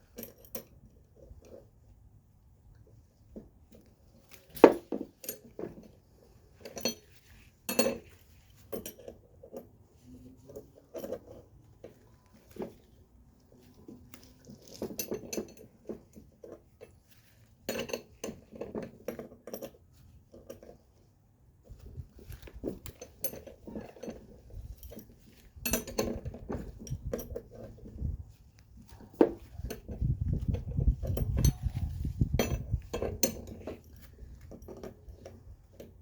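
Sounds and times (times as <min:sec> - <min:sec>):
hand tools clanking on metal: 0:04.4 - 0:09.7, 0:17.6 - 0:19.8, 0:21.9 - 0:28.1, 0:28.8 - 0:36.0.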